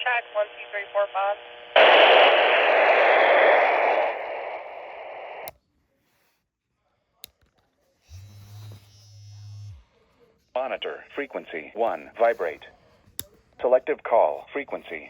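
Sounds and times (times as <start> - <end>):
radio static hissing: 0.0 - 5.5, 8.0 - 15.0
pager vibrate motor buzzing: 8.0 - 10.0.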